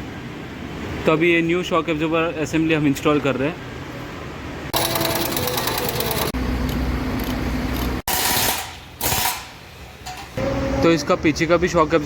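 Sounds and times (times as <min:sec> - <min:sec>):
pneumatic impact wrench hammering: 0:07.8 - 0:10.4.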